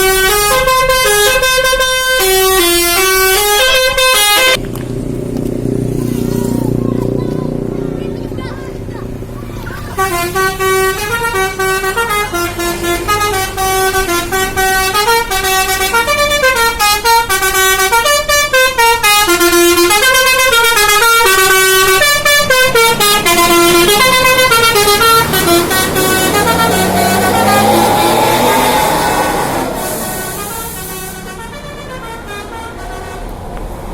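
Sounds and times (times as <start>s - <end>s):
multi-tone musical bus horn: 0.0s - 4.6s, 9.8s - 33.6s
single rising tone: 26.2s - 30.5s.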